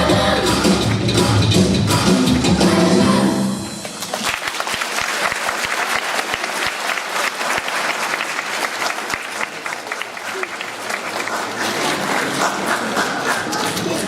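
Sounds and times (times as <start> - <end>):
backing music: 0.0 - 4.1
audience applause: 3.8 - 14.0.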